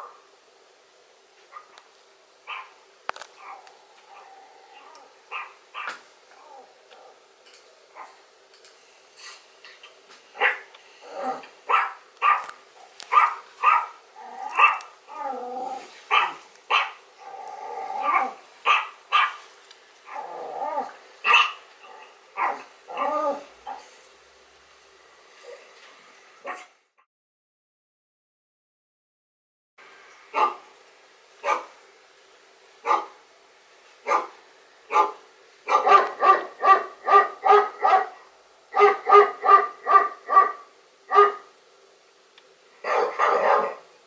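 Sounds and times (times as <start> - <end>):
dog barking on playback: 1.5 - 1.8, 2.4 - 2.8, 3.4 - 6.0, 7.9 - 8.2, 10.4 - 15.0, 16.1 - 17.1, 18.0 - 19.4, 20.1 - 23.9, 26.4 - 26.8, 30.3 - 30.7, 31.4 - 31.8, 32.8 - 33.2, 34.0 - 41.6, 42.8 - 43.9.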